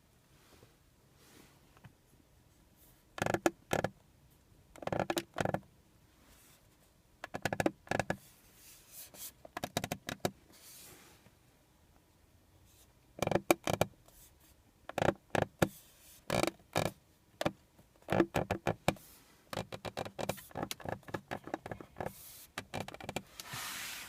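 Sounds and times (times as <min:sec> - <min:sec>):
car interior creaks and clicks: 0:03.2 - 0:04.0, 0:04.7 - 0:05.7, 0:07.2 - 0:08.3, 0:09.4 - 0:10.4, 0:13.2 - 0:14.0, 0:14.8 - 0:23.5.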